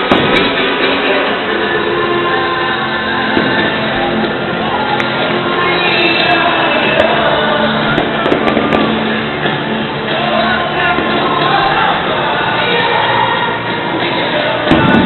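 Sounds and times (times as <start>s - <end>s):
firework bang: 0.0s - 1.4s, 3.3s - 4.4s, 6.7s - 9.7s, 14.7s - 15.0s
music with singing: 0.0s - 15.0s.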